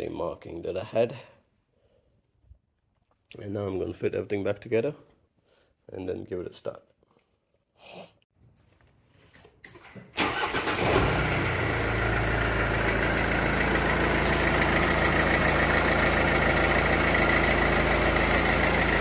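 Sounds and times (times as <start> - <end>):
diesel engine cranking and idling: 10.2 - 19.0.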